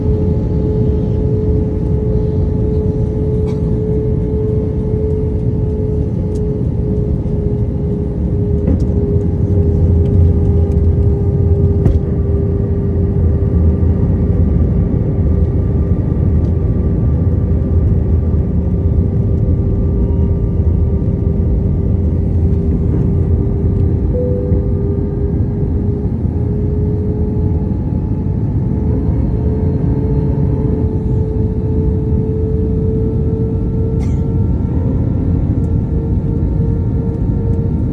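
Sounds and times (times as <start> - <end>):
airplane engine rumbling: 0.0 - 37.9.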